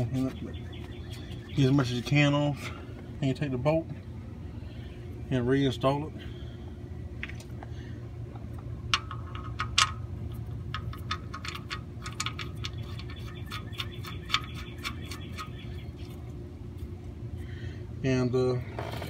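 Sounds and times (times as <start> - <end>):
steady low hum: 0.0 - 19.0
wrench ratcheting ticks: 10.7 - 15.6.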